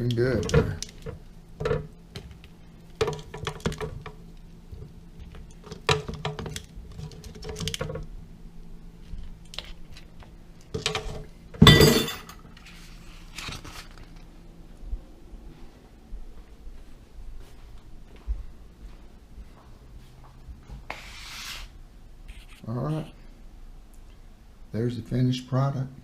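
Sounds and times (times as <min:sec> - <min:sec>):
dishes and utensils clinking: 0:10.8 - 0:12.4.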